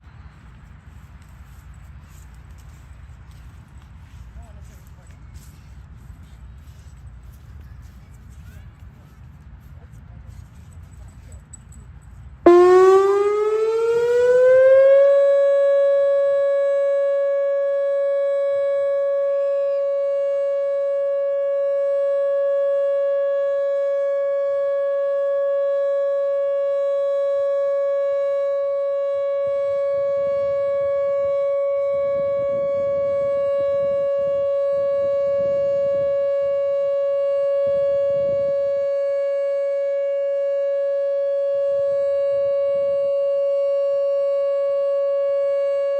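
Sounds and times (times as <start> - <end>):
warning siren: 12.4 - 45.9.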